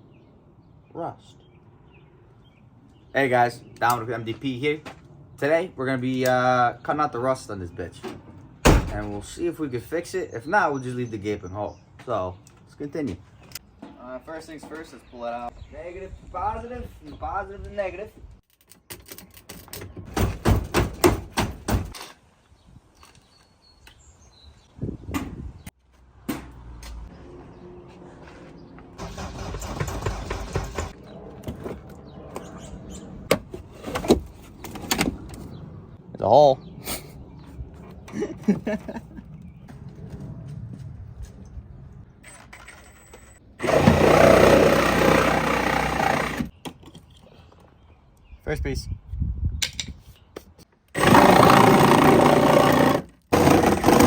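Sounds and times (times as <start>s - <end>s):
bird chirping: 31.0s - 33.3s
power tool cutting sheet metal: 43.6s - 46.5s, 51.0s - 54.0s.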